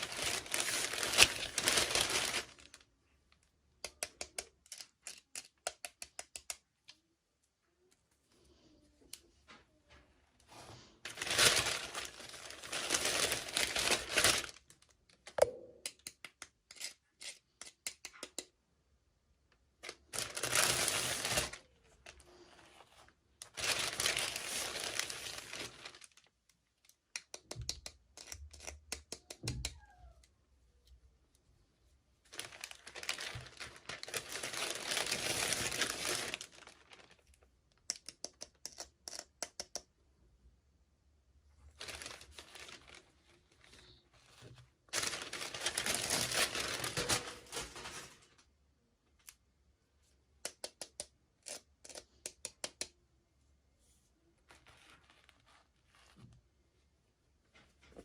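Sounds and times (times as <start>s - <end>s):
packaging being torn and crinkled: 0.0s - 2.8s, 11.1s - 15.0s, 19.8s - 22.2s, 23.4s - 26.3s, 32.3s - 37.3s, 41.8s - 44.0s, 44.9s - 48.4s
small clicks and taps: 3.8s - 8.0s, 15.1s - 18.6s, 26.4s - 31.0s, 37.7s - 39.9s, 50.4s - 51.2s.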